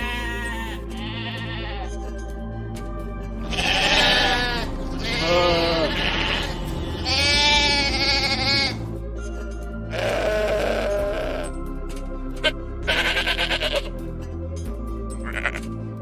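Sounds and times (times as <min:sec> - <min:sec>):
sheep bleating: 0:00.0 - 0:02.0, 0:03.4 - 0:08.8, 0:09.9 - 0:11.6, 0:12.4 - 0:14.0, 0:15.2 - 0:15.6
background music: 0:00.0 - 0:16.0.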